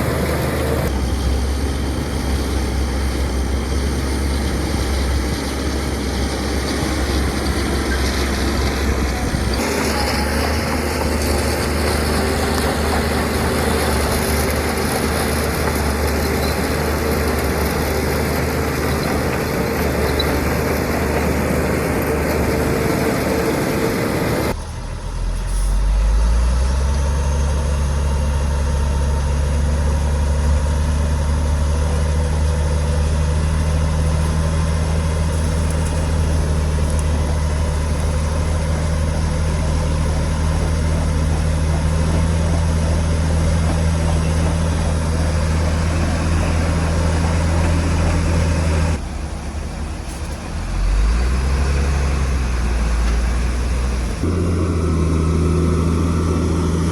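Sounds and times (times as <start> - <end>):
heavy diesel engine under load: 0.0 - 56.9.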